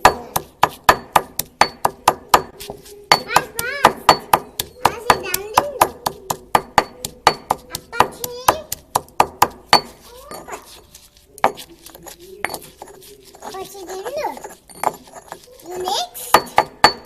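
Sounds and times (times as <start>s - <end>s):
utensil knocking on hard surface: 0.0s - 17.0s.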